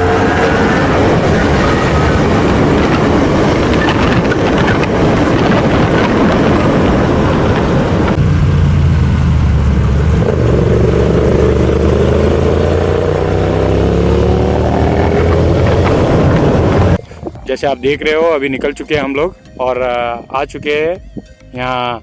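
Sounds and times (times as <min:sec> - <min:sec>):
motorcycle engine running: 0:00.0 - 0:17.0
rough rush of noise: 0:00.0 - 0:17.0.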